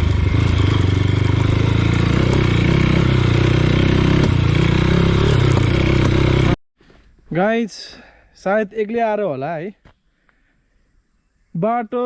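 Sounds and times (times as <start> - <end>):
motorcycle engine running: 0.0 - 6.6
road and wind noise: 0.0 - 6.6.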